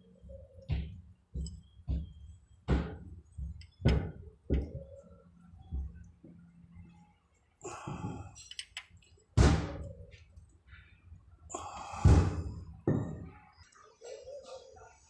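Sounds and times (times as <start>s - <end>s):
heavy clunks and knocks: 0.7s - 4.9s, 12.1s - 13.4s.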